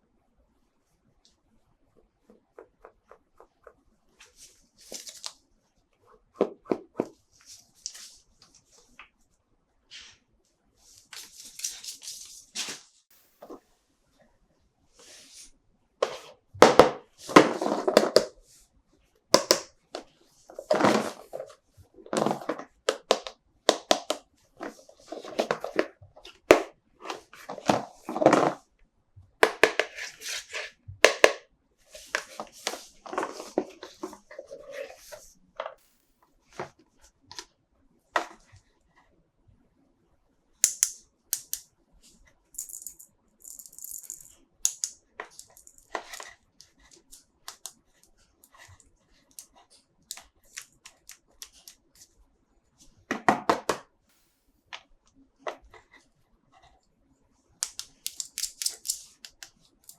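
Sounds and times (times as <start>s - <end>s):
plastic toys clicking and tapping: 40.6s - 41.6s, 42.6s - 46.2s, 57.6s - 59.9s.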